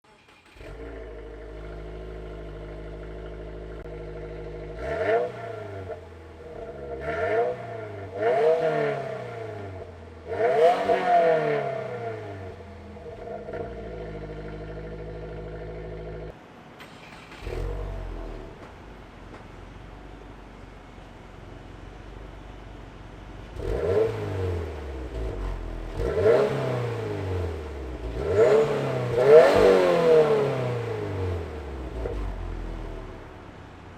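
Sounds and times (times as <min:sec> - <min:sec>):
car engine revving: 0:00.4 - 0:16.4, 0:23.4 - 0:33.5
car engine idling: 0:00.4 - 0:16.7, 0:17.3 - 0:33.9.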